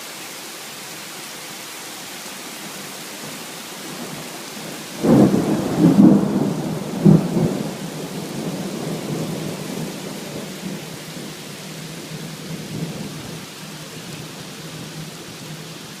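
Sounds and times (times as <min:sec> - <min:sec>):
steady rain: 0:00.0 - 0:16.0
thunder clap and rumble: 0:04.9 - 0:11.4.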